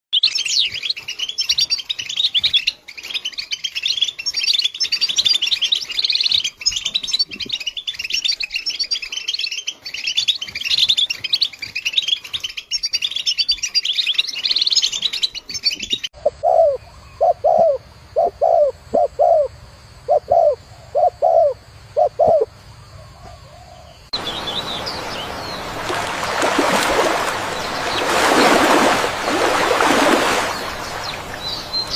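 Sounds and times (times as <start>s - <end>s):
dove cooing: 16.2s - 19.5s, 20.1s - 22.5s.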